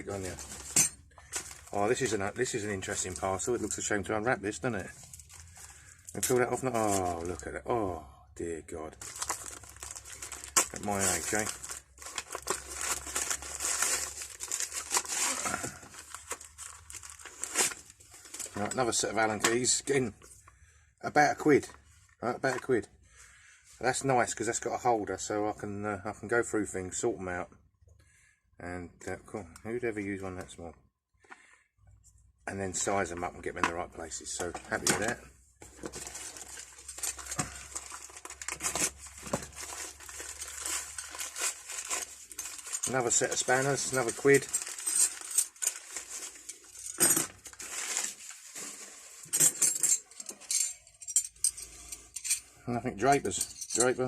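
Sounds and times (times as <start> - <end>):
parcel wrapping crinkling: 0.0 - 7.4, 9.0 - 19.2, 35.0 - 51.2.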